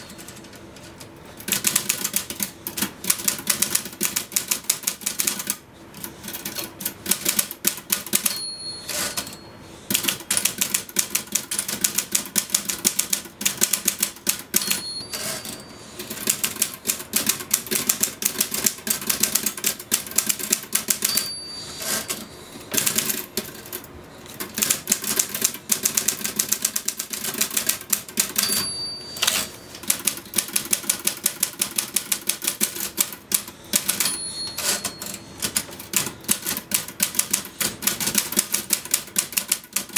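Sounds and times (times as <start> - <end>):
typewriter carriage return: 0.0 - 39.9
typewriter keys clacking: 0.0 - 39.9
typewriter carriage bell ding: 7.9 - 9.6, 14.3 - 16.4, 20.8 - 22.4, 28.2 - 30.1, 33.7 - 35.7.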